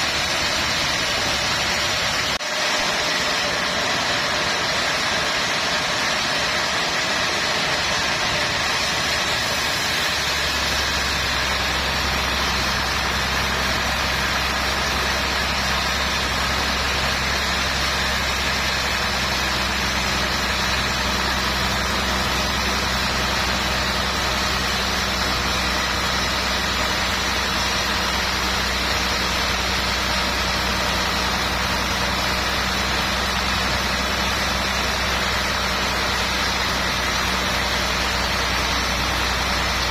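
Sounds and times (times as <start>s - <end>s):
low engine hum: 0.0s - 39.9s
sawmill machinery running: 0.0s - 39.9s.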